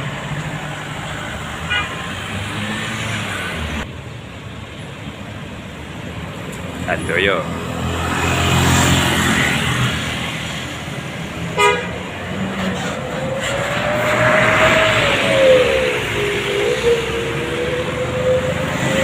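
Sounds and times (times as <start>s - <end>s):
tyre and road noise: 0.0s - 19.0s
vehicle passing by: 6.7s - 11.3s, 12.1s - 19.0s.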